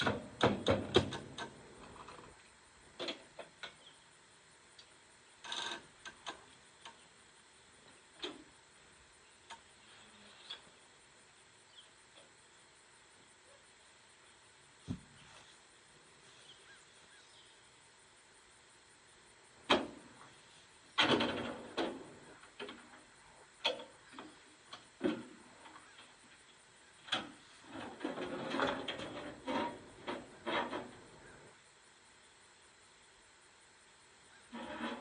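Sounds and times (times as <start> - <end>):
sharp knocks and clatter: 0.0 - 2.2.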